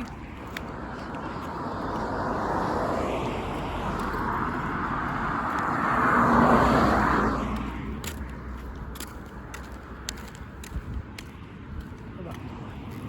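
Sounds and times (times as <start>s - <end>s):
vehicle passing by: 0.0s - 13.0s.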